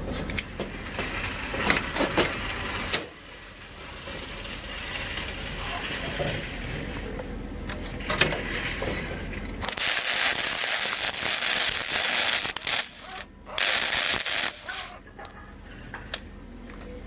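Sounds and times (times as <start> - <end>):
loud hiss: 9.7 - 14.9.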